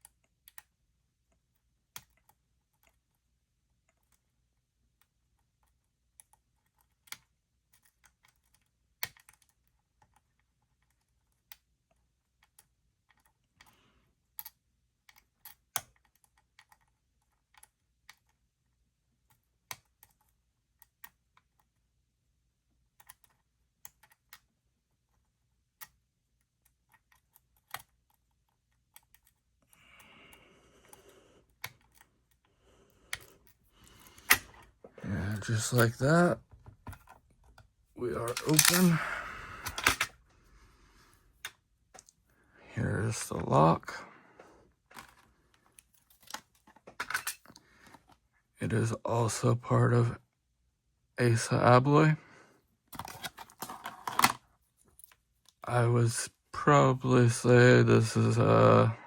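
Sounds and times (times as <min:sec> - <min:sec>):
lock pick clicking pins: 0:33.1 - 0:34.7, 0:38.2 - 0:39.0, 0:39.6 - 0:40.1.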